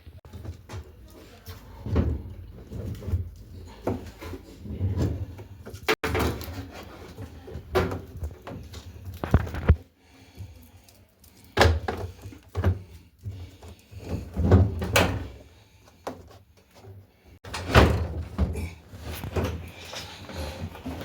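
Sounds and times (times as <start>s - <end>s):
washing machine parts thumping: 14.1s - 15.4s, 17.4s - 19.7s.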